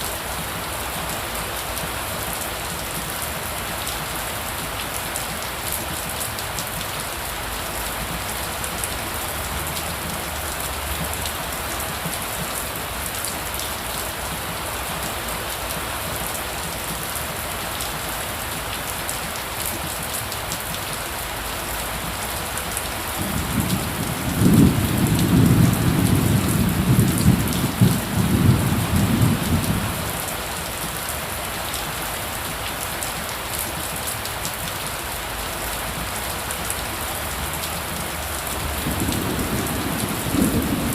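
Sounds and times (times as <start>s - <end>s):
heavy rain falling: 0.0s - 40.9s
low rumble of thunder: 23.2s - 30.2s, 38.6s - 40.9s.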